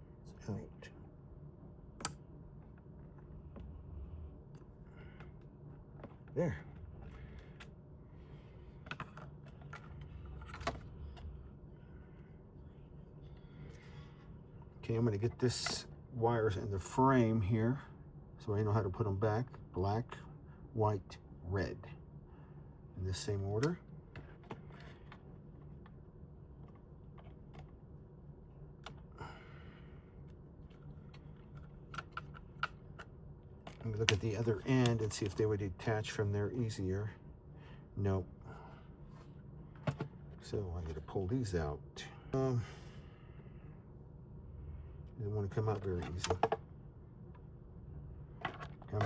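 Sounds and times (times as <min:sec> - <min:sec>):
low steady hum: 0:00.0 - 0:49.0
clicks of handling plastic parts: 0:30.6 - 0:35.4, 0:39.8 - 0:40.2.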